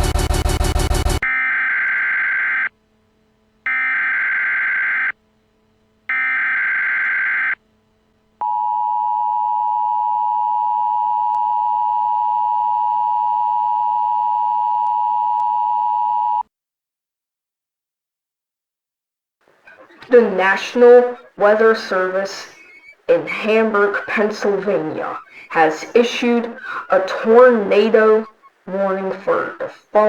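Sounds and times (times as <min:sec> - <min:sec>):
screeching data bursts: 0:19.7 - 0:30.0.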